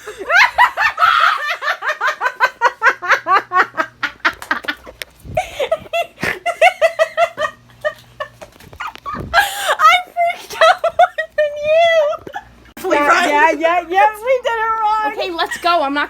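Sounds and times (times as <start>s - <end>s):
young women giggling: 0.0s - 12.6s.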